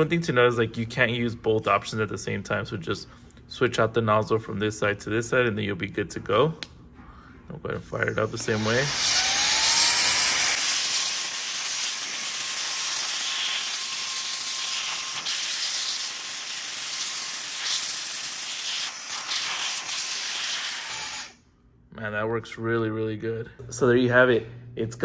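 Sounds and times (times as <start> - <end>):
handheld vacuum blower whine: 8.0 - 21.4.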